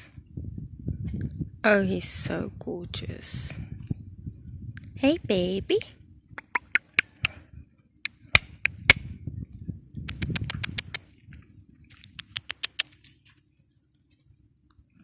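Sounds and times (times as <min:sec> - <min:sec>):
low rumble: 0:00.1 - 0:06.4
sharp clicks: 0:10.1 - 0:11.0.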